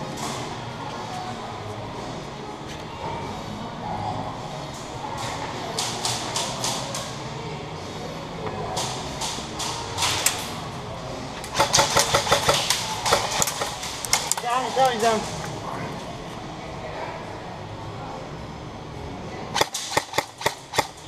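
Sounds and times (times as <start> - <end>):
airsoft guns firing bursts: 11.5 - 14.3, 19.6 - 21.0.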